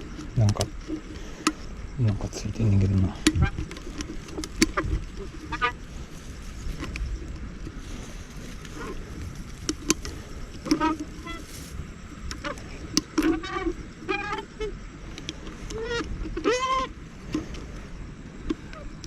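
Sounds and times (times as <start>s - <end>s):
honking calls: 2.7s - 6.4s, 10.1s - 11.8s.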